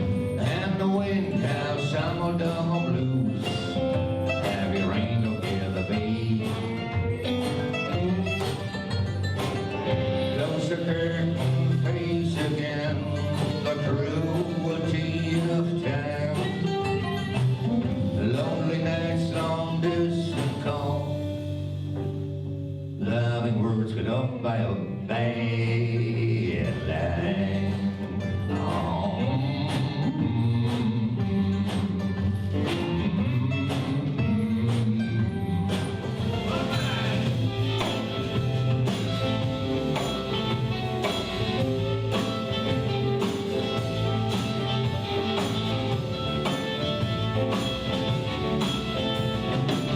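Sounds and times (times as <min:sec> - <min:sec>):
person singing: 0:00.0 - 0:08.8, 0:09.7 - 0:21.6, 0:22.9 - 0:49.9
guitar melody: 0:00.0 - 0:23.2, 0:24.8 - 0:49.9
blues band playing live: 0:00.0 - 0:49.9.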